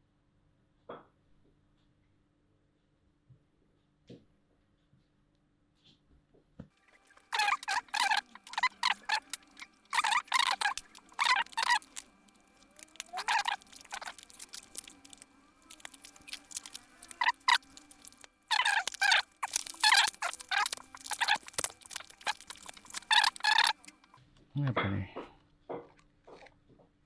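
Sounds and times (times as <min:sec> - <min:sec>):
plastic packaging crinkling: 0:07.4 - 0:24.1.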